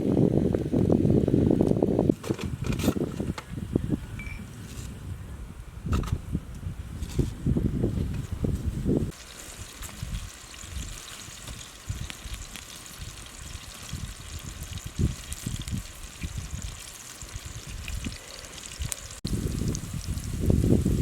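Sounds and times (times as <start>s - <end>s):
running water hissing: 9.1s - 21.0s.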